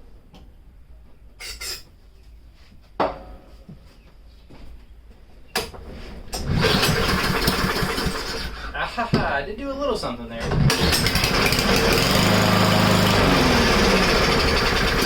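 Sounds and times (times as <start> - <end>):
lawn mower engine running: 6.4 - 8.6, 10.5 - 15.0.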